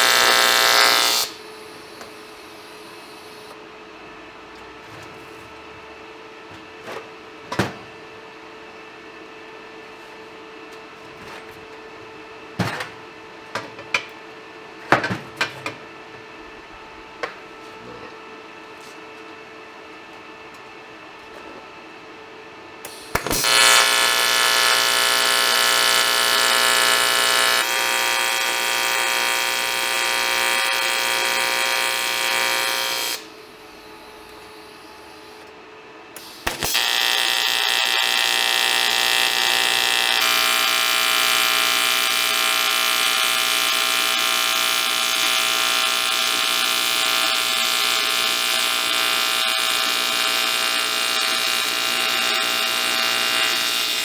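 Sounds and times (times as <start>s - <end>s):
welding arc buzzing: 0.0s - 3.6s, 22.8s - 35.4s, 36.2s - 54.0s.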